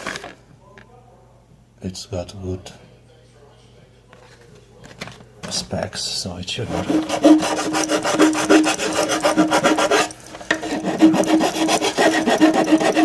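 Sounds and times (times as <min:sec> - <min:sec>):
scraping strokes on plastic pipe: 0:06.6 - 0:13.0.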